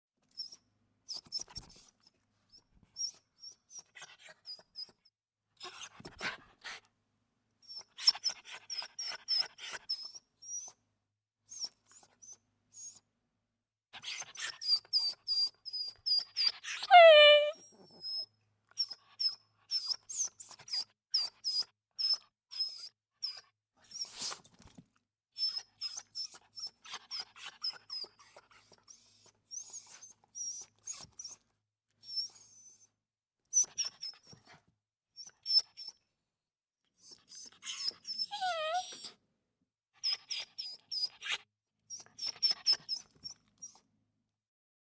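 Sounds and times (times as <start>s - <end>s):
dog whimpering: 16.7s - 17.6s, 37.3s - 39.2s.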